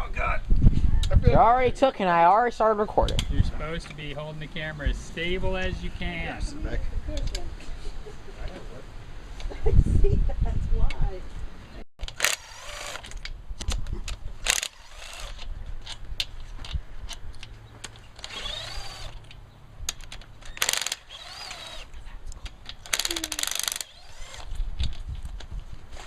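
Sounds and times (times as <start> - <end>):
hand tools and metal parts clattering: 12.0 - 26.0.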